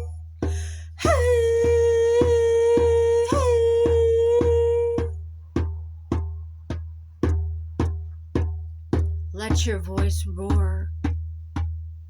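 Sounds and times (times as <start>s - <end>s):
deep drumbeat: 0.0s - 12.0s
voice holding long note: 1.0s - 5.1s.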